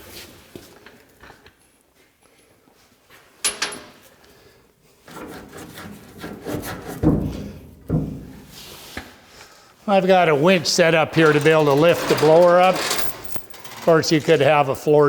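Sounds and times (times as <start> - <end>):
metal and wood scraping: 10.4 - 15.0.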